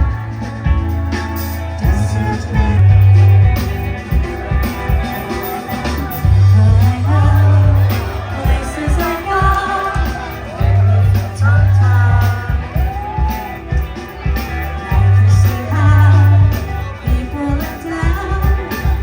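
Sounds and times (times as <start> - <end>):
bass guitar: 0.0 - 19.0
person singing: 0.0 - 19.0.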